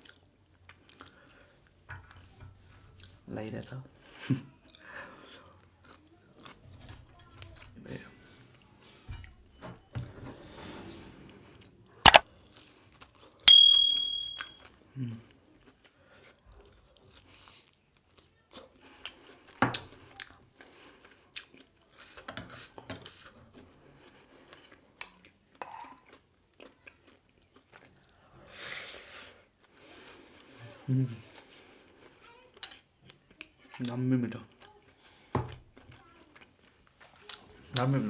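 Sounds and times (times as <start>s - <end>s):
spoon clicking against plate: 13.5s - 14.4s.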